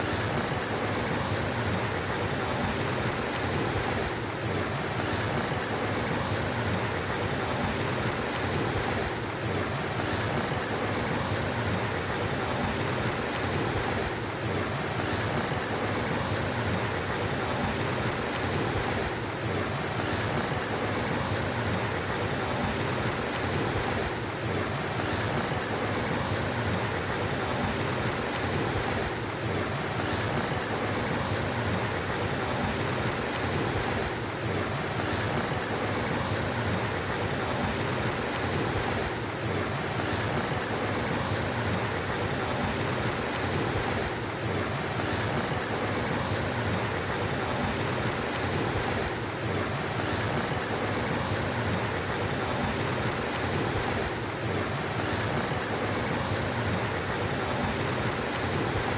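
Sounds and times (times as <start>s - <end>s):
flowing water rushing: 0.0s - 58.9s.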